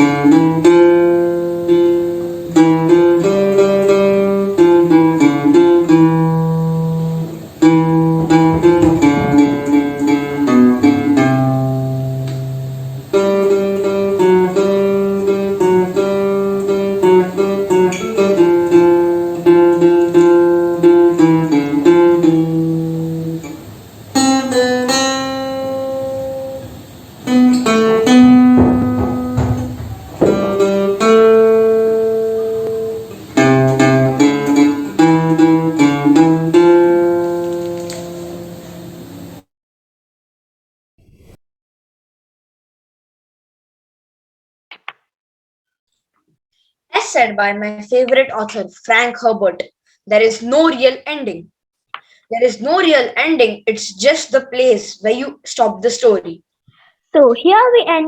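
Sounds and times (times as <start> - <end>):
acoustic guitar playing: 0.0 - 39.4.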